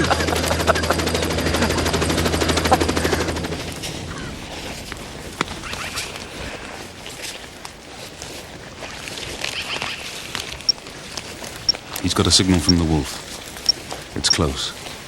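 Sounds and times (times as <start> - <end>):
aircraft engine pulsing: 0.0 - 6.9.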